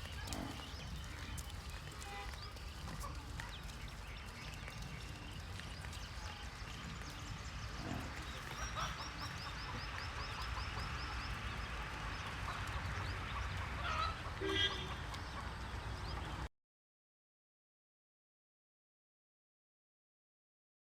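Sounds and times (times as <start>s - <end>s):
birds calling: 0.0s - 16.5s
low steady background rumble: 0.0s - 16.5s.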